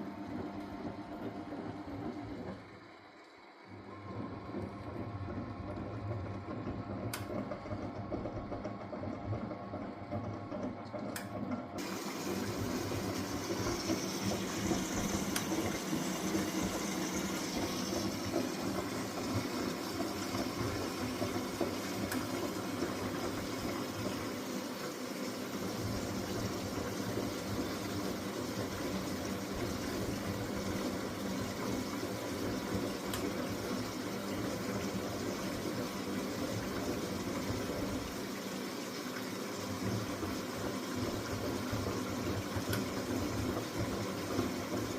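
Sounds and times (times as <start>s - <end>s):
washing machine humming: 0.0s - 44.9s
washing machine clicks: 10.3s - 23.9s.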